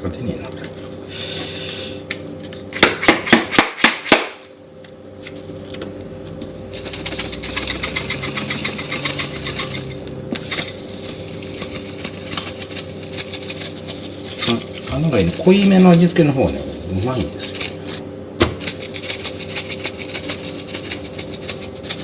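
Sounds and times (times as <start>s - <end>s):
shaker bottle rattling: 6.6s - 18.0s, 18.6s - 22.0s.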